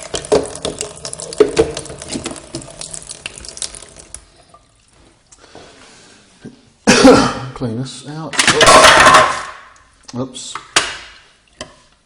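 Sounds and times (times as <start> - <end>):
water tap running and splashing: 0.0 - 5.0.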